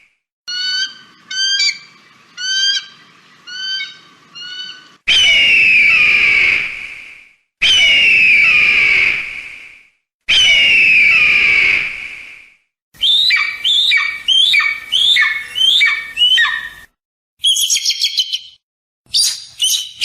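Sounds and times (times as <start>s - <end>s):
bird of prey calling: 0.5s - 6.6s, 13.0s - 20.0s.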